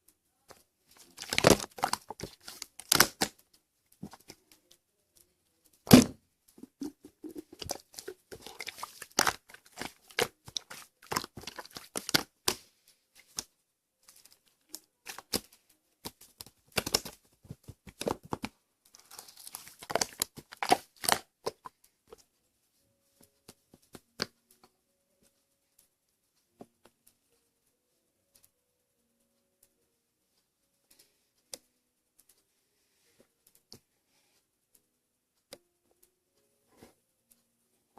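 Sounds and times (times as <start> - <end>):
slime sticky pops: 1.2 - 3.4.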